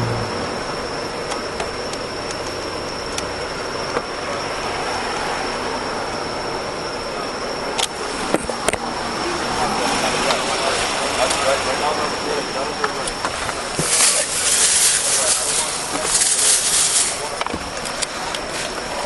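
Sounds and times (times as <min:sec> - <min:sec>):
road traffic roar: 0:00.0 - 0:19.0
thin high whine: 0:00.0 - 0:19.0.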